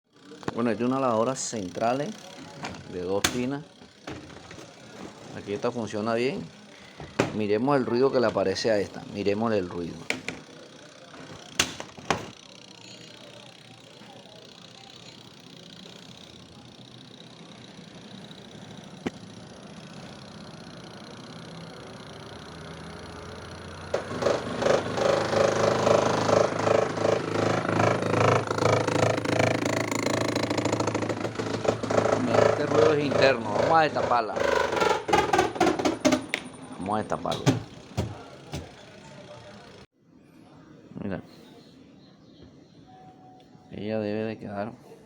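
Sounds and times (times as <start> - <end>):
spin tub hum: 0.2 - 39.8
washing machine clicks: 2.5 - 5.1, 11.2 - 12.4, 34.7 - 39.0
fast rhythmic knocking of tub: 35.0 - 36.3.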